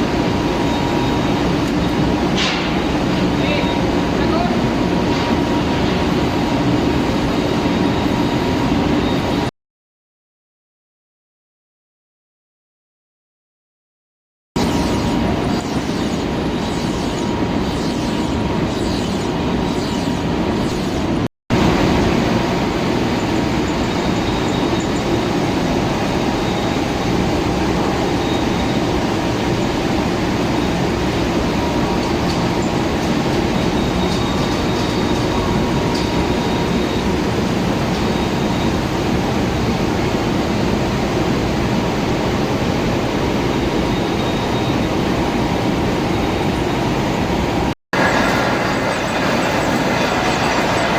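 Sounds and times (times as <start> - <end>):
machine tool cutting metal: 14.6 - 21.2.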